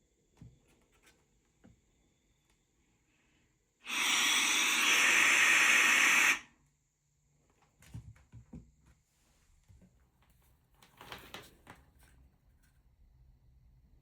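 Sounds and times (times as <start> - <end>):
steady rush of air: 3.9 - 6.4.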